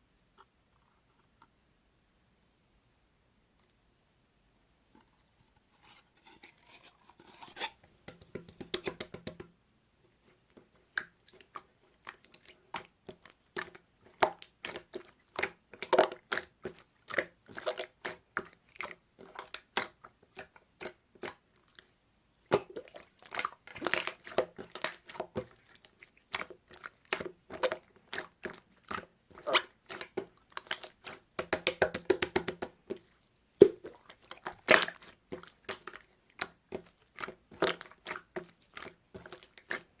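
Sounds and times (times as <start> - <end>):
slime clicking and popping: 30.6 - 32.8.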